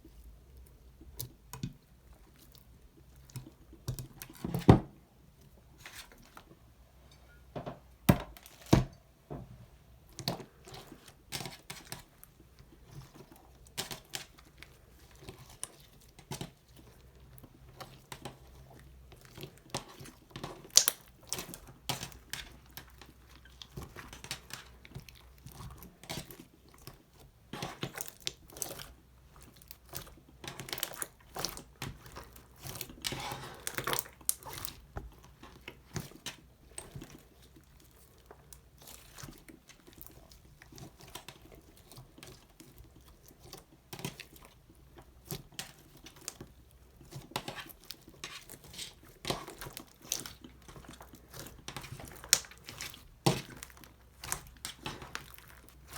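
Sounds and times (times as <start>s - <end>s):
slime crackling and popping: 19.4s - 27.0s, 27.6s - 34.9s, 45.0s - 55.9s.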